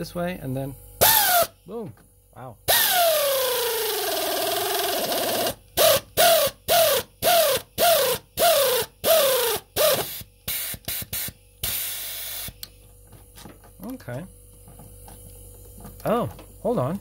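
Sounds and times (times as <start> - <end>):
air ratchet whining: 1.0 - 1.6, 2.7 - 12.6
exhaust air hissing: 5.8 - 12.6.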